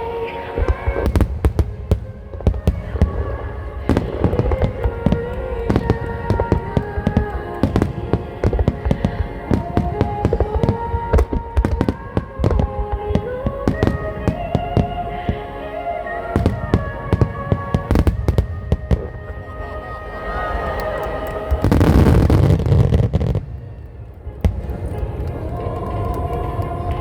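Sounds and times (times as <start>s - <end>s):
music with held melody: 0.0s - 27.0s
fireworks bangs: 0.6s - 14.9s, 20.7s - 27.0s.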